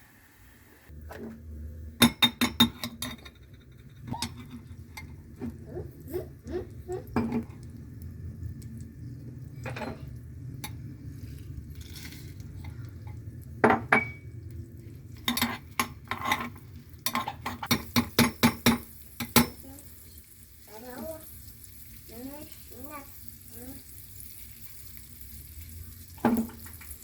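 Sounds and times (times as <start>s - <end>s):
steady low hum: 0.9s - 17.8s
metal utensil clinking on cookware: 2.0s - 5.2s, 15.2s - 19.7s.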